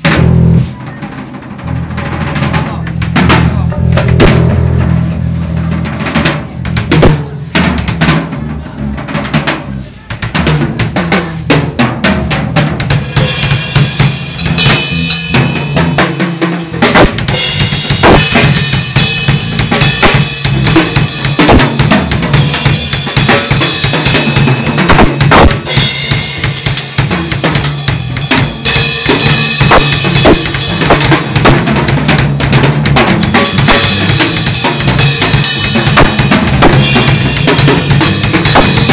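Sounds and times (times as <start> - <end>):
drum kit playing: 0.0 - 38.9
cymbals washing: 12.9 - 31.9.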